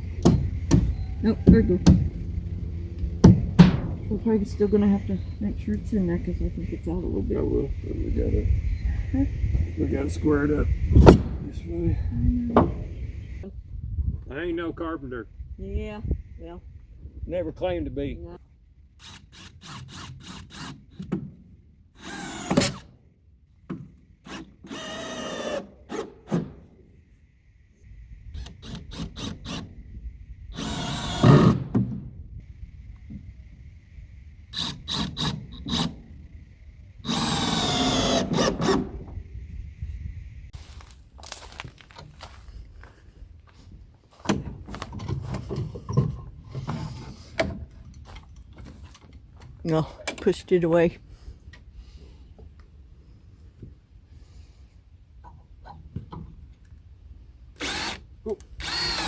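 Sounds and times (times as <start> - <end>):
sharp knocks: 3.2 - 4.1
power drill running: 22.0 - 22.8, 24.2 - 26.1, 28.4 - 29.7, 30.5 - 31.7, 34.5 - 35.9, 37.0 - 38.8, 57.6 - 59.0.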